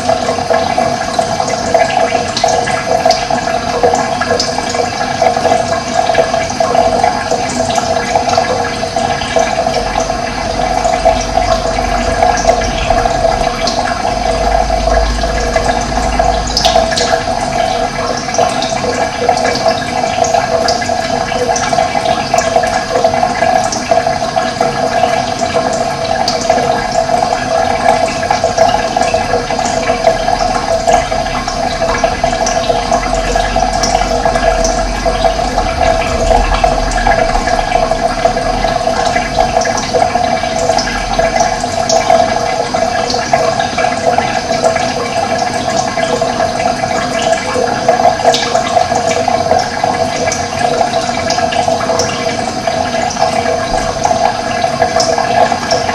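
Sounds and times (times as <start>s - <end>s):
running water rushing: 0.0s - 55.9s
faint low rumble: 9.8s - 18.2s, 29.6s - 41.6s.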